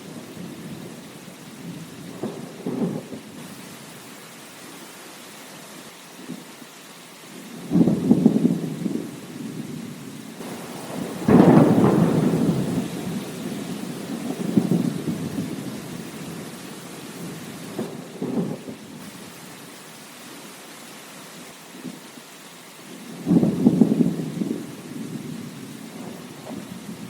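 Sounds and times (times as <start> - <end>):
thunder rumbling: 0.0 - 3.7, 7.5 - 19.3, 22.9 - 27.0
steady rain: 0.0 - 27.0.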